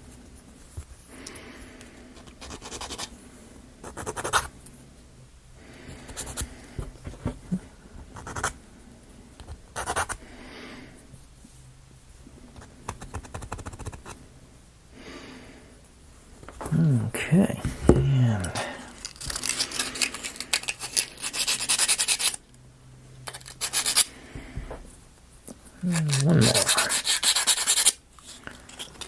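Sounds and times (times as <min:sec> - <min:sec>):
sandpaper scratching wood: 0:19.8 - 0:22.4, 0:23.4 - 0:24.1, 0:25.9 - 0:28.0.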